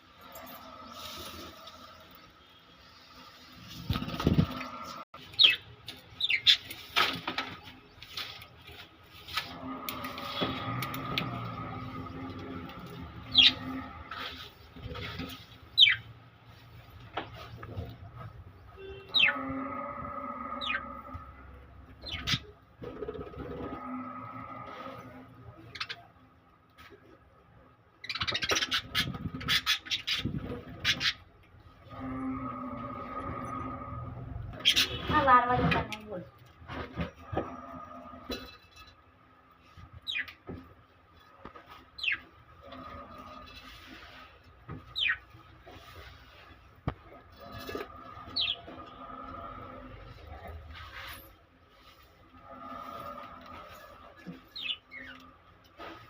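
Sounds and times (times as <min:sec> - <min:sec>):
lovebirds chirping: 0:15.7 - 0:16.1.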